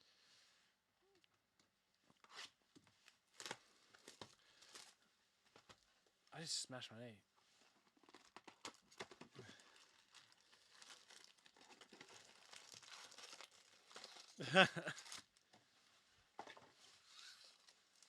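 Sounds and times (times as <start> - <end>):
foil wrappers crinkling and tearing: 3.3 - 5.0, 8.0 - 15.4
wordless vocal sound: 14.4 - 14.9.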